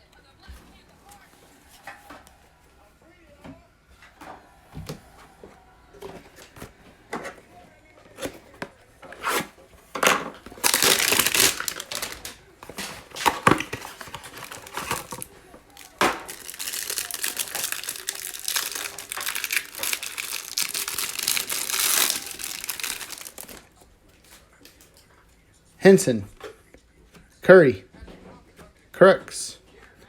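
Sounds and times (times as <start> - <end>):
plastic wrapper crinkling: 10.4 - 23.7.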